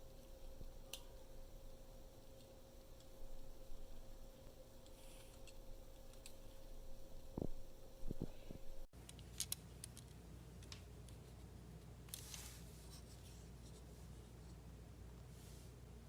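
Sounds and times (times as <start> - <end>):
faint hum: 0.0 - 16.0
faint clicks and handling noises: 2.2 - 14.6.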